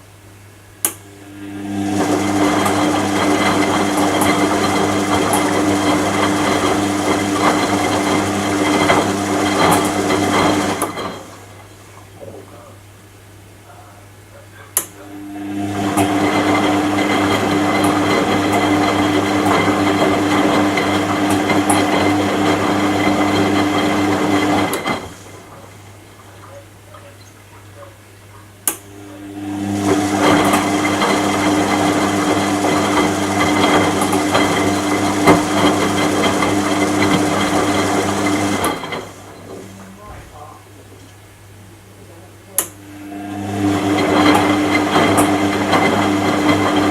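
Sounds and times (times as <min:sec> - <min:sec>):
washing machine motor humming: 0:00.0 - 0:46.9
washing machine click: 0:15.9 - 0:28.9.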